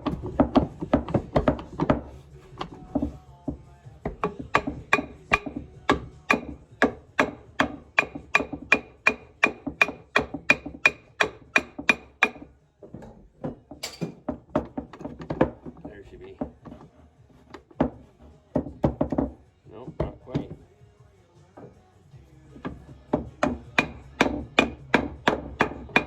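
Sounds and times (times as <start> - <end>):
hammer striking metal: 13.8 - 14.3.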